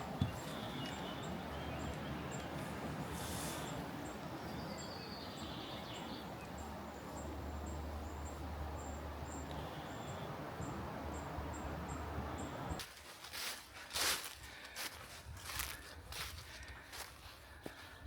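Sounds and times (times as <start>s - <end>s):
outdoor hiss: 2.4s - 12.8s.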